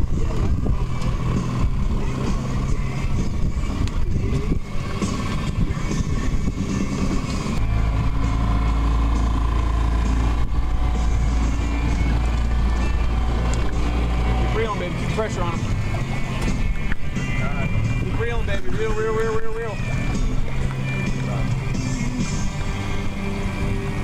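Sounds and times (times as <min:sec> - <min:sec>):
boat motor running: 0:00.0 - 0:24.0.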